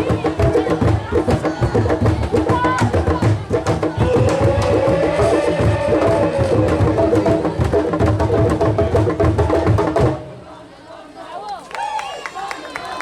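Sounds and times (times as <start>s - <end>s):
drums and percussion beat: 0.0s - 10.3s.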